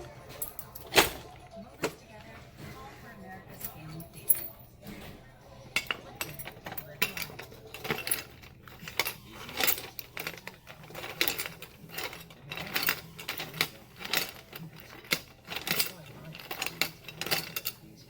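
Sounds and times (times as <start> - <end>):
coins and metal parts clinking: 0.0 - 2.1, 3.5 - 18.0.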